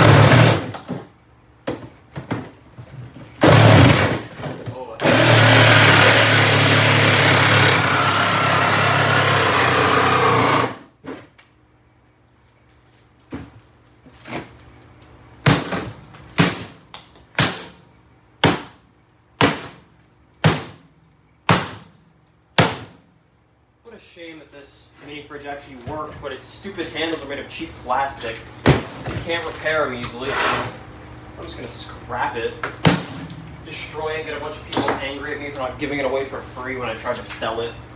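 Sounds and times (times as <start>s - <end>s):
power tool running: 0.0s - 0.7s, 3.4s - 4.2s, 5.0s - 10.9s.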